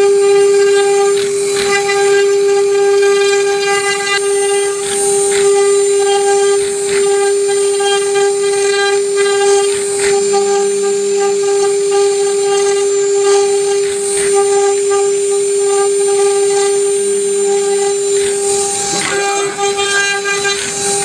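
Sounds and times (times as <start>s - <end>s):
router spindle whining: 0.0s - 21.0s.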